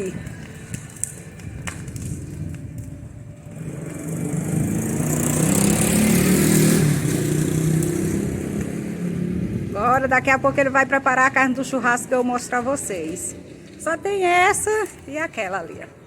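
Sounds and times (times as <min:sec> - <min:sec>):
vehicle engine passing by: 0:03.4 - 0:13.9.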